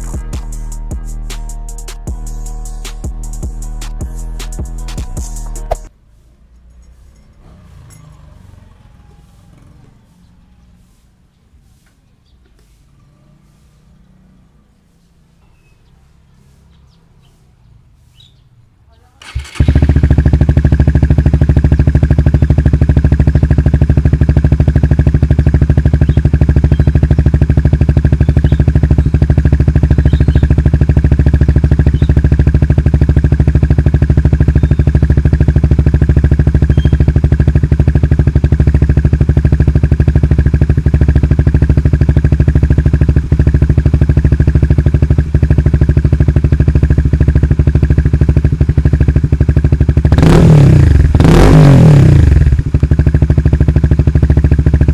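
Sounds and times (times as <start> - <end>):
motorcycle engine idling: 13.0 - 54.9.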